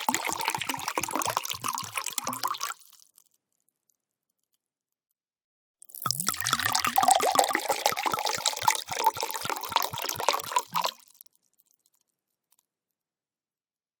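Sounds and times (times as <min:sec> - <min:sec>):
wine glugging from bottle: 0:06.1 - 0:10.9.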